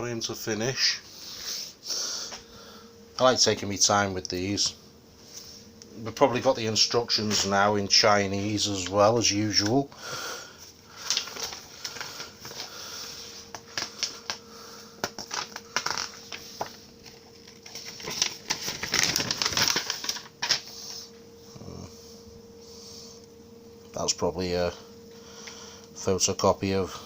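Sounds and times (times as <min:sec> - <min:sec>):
faint steady hum: 0:00.0 - 0:27.0
packaging rustling and crinkling: 0:10.6 - 0:21.2.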